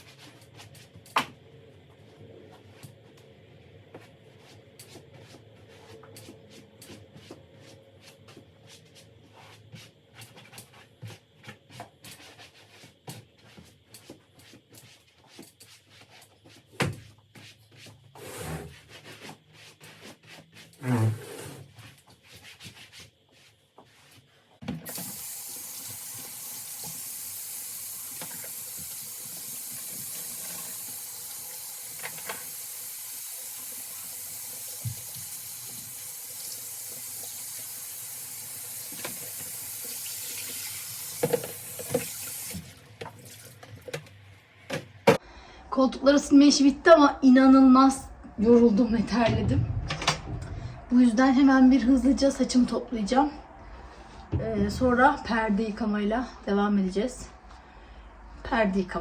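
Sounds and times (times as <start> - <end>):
tap running into sink: 38.8 - 44.1.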